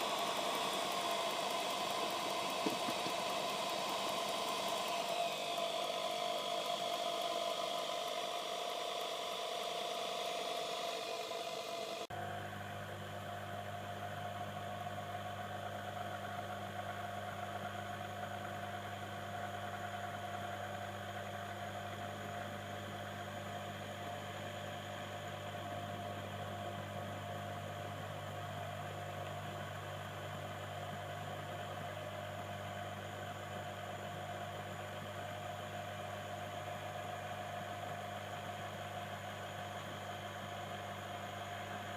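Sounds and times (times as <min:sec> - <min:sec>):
small electric motor humming: 0:00.0 - 0:12.1.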